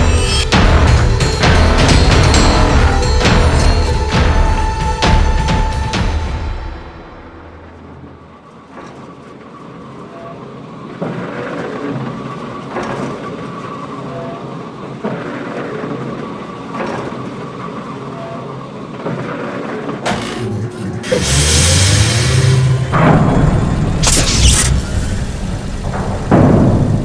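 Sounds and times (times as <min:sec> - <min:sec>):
steady rumbling noise: 0:20.2 - 0:27.0.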